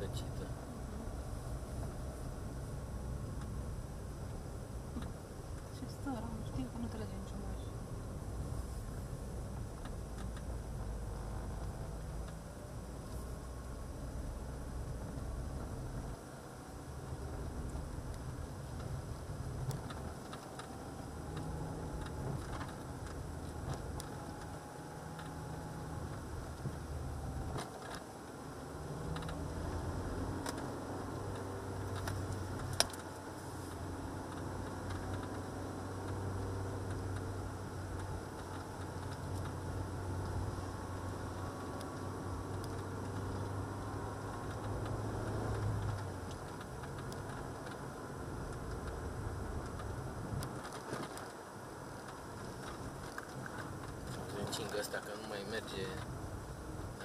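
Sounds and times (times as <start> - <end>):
car engine and road rumble: 0.0 - 57.0
faint ticks: 9.6 - 12.4
light clicks and ticks: 9.7 - 12.5, 17.1 - 56.1.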